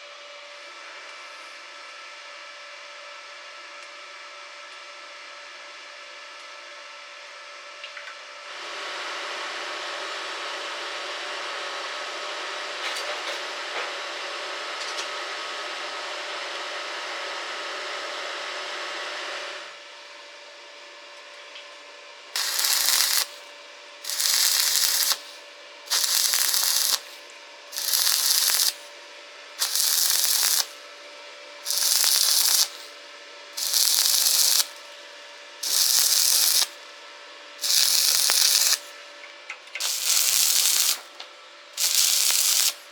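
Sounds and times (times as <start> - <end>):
short welding arc bursts: 22.4 - 28.9, 29.6 - 30.8, 31.6 - 33.0, 33.6 - 34.9, 35.6 - 36.8, 37.6 - 39.0, 39.8 - 41.1, 41.8 - 42.9
welding arc crackling hiss: 22.4 - 28.9, 29.6 - 30.8, 31.6 - 33.0, 33.6 - 35.0, 35.6 - 36.9, 37.6 - 39.0, 39.8 - 41.1, 41.8 - 42.9.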